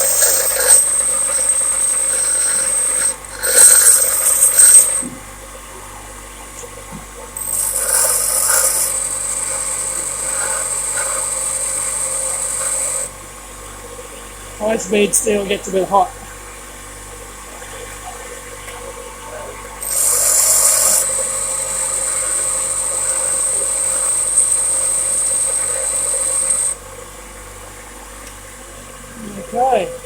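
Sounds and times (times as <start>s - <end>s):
grinder whining: 0.0s - 5.3s, 7.4s - 13.2s, 19.8s - 26.8s.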